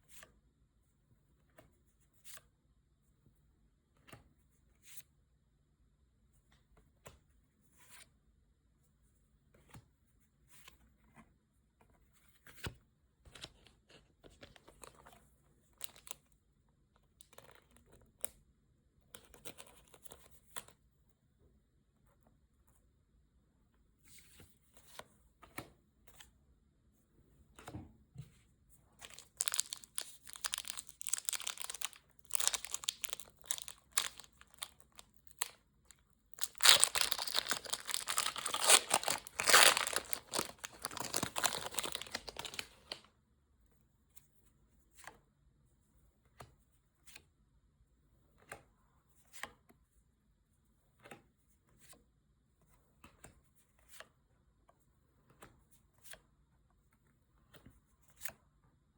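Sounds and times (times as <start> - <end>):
packaging tearing and crinkling: 29.0 - 35.6, 36.4 - 43.0.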